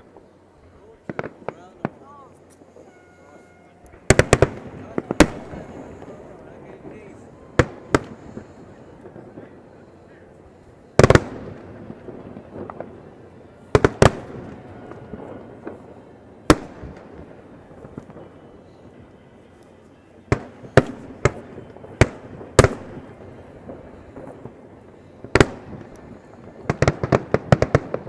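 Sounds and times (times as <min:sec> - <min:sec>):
fireworks bursting: 0:00.0 - 0:28.0.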